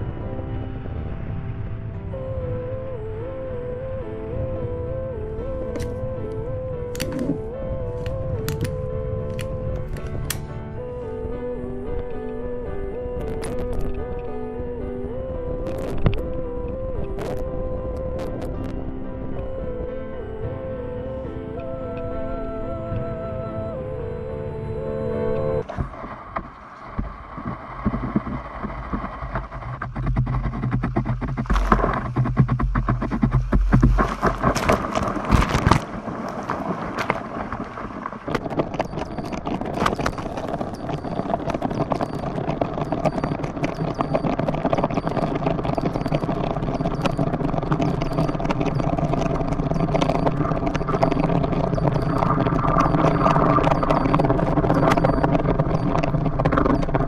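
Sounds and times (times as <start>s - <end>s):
board rattling over water: 25.6s - 57.0s.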